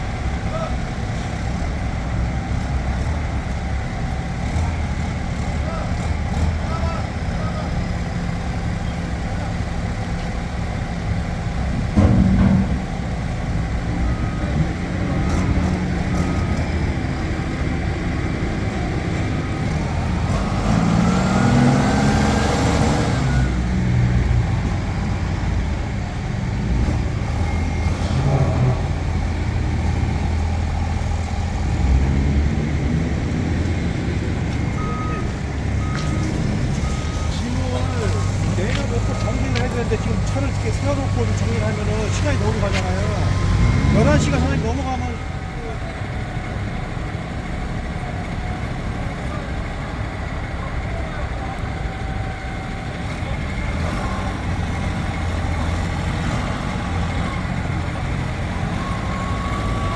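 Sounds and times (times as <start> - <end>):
heavy vehicle engine droning: 0.0 - 59.9.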